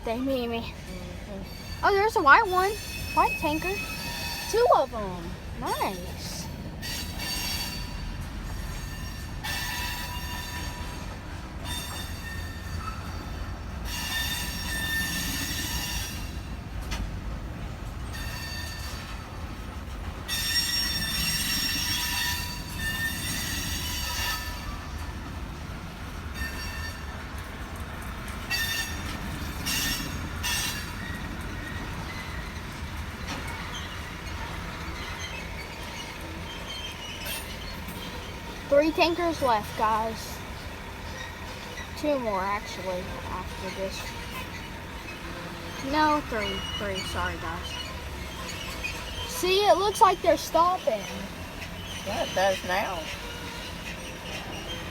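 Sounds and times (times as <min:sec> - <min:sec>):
train cars rolling on rails: 0:00.0 - 0:54.9
high-pitched wheel squeals: 0:01.5 - 0:04.8, 0:11.6 - 0:16.3, 0:20.3 - 0:24.9.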